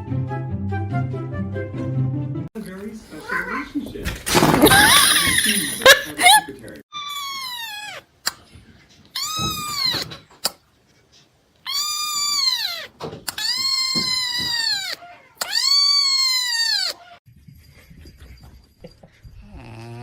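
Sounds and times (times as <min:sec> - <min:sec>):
cat meowing: 0:07.0 - 0:08.1, 0:09.2 - 0:10.2, 0:11.6 - 0:17.2.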